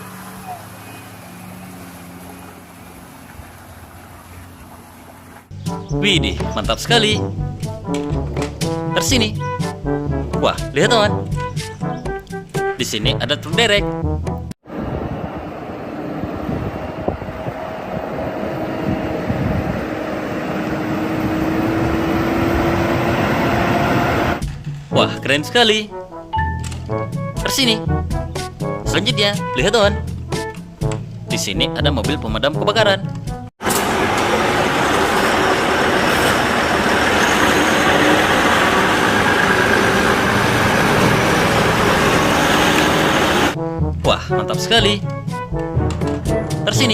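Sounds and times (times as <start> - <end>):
heavy vehicle engine rumbling: 0.0 - 5.8, 14.7 - 24.9, 33.6 - 43.6.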